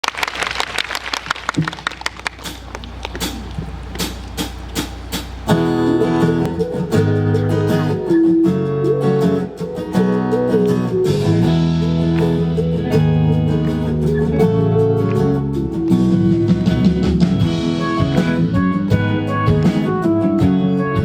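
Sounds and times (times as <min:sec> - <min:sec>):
people clapping: 0:00.0 - 0:07.2, 0:09.6 - 0:18.4
low hum: 0:01.1 - 0:08.0
guitar over sound system: 0:02.3 - 0:21.0.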